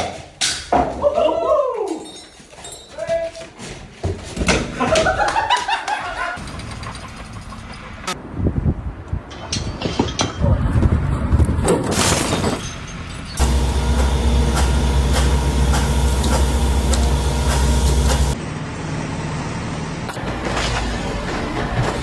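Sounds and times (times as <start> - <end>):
low machine rumble: 13.4 - 18.4.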